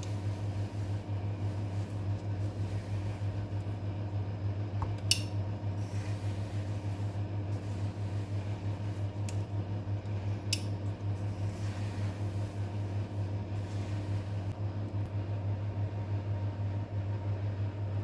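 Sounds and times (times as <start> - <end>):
low pulsing motor hum: 0.0 - 18.0.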